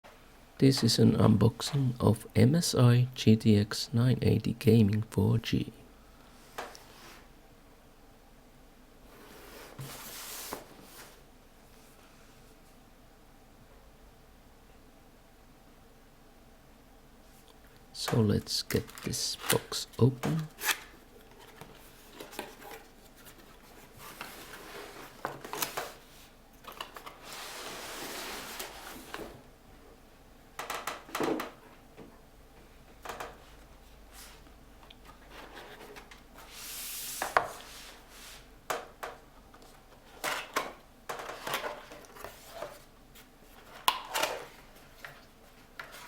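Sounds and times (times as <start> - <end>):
cardboard sliding and rubbing: 9.1 - 11.2, 21.4 - 26.4, 27.2 - 29.4, 35.3 - 38.5.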